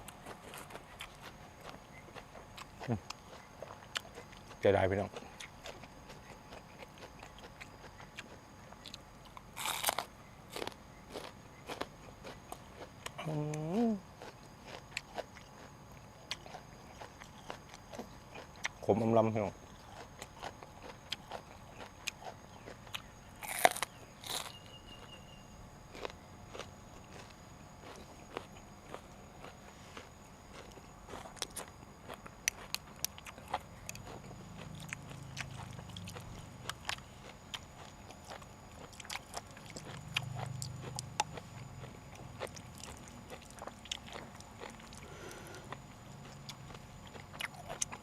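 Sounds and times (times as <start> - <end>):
person chewing food: 0.0 - 18.9, 19.6 - 48.0
food crunching: 0.0 - 48.0.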